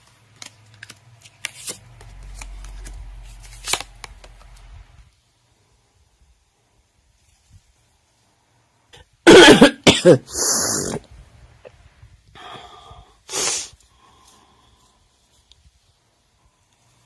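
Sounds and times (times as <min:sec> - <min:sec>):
person coughing: 0:09.3 - 0:11.0.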